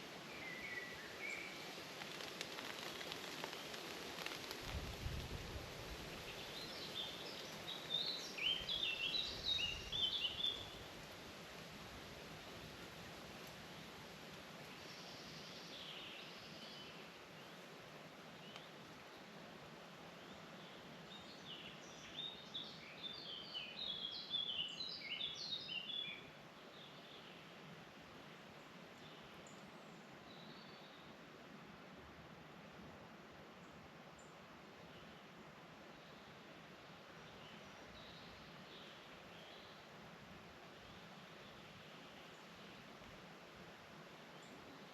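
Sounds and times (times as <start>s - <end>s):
songbird singing: 0.0s - 4.4s, 6.1s - 10.9s, 14.6s - 17.6s, 20.2s - 27.6s, 28.5s - 31.1s, 37.0s - 39.9s
steady background hiss: 0.0s - 44.9s.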